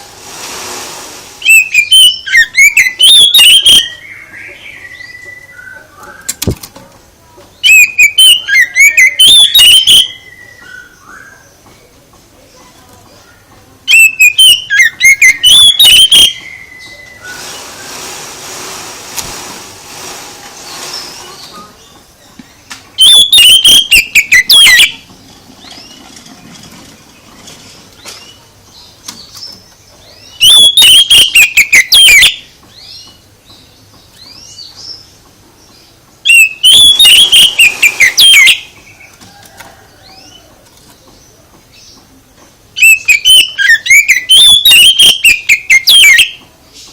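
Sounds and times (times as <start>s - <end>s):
bird song with falling notes: 1.4s - 6.6s, 7.5s - 17.9s, 28.0s - 39.4s, 42.8s - 46.5s
rustling: 17.2s - 21.9s.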